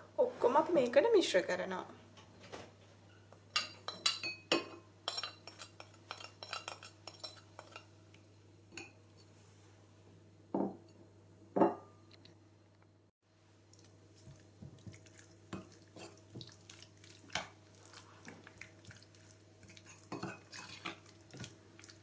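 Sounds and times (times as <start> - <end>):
spoons and dishes clinking: 3.6 - 7.9.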